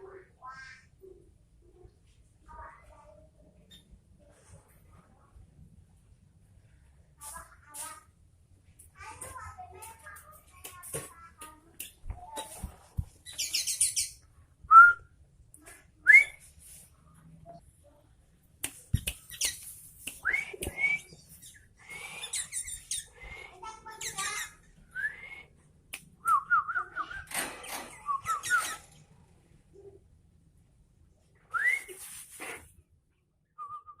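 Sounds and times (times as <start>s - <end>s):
scratchy high bird chatter: 13.2s - 14.2s, 18.8s - 20.2s, 20.9s - 25.3s, 27.7s - 29.0s.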